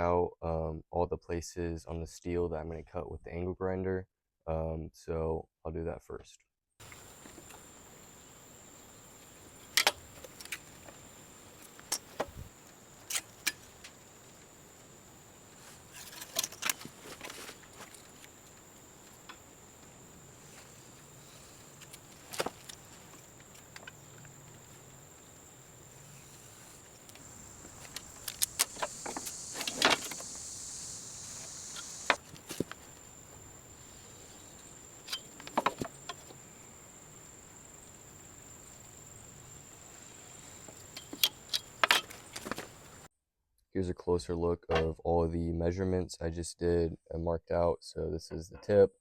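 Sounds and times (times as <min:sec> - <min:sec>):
scratchy rustle: 0:15.6 - 0:18.4.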